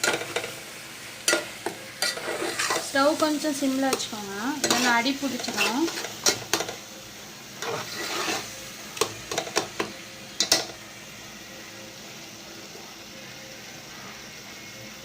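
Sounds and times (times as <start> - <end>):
spoon stirring in pan: 1.2 - 6.8, 7.6 - 10.8.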